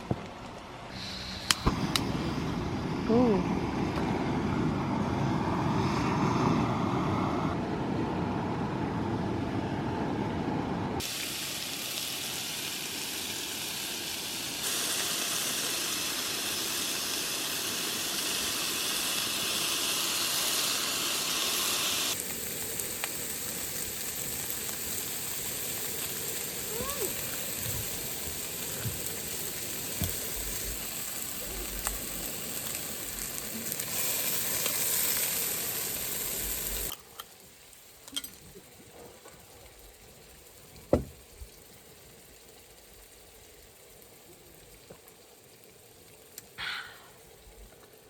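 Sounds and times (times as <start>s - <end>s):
heating pack hissing and fizzing: 0.0s - 6.7s, 11.0s - 48.0s.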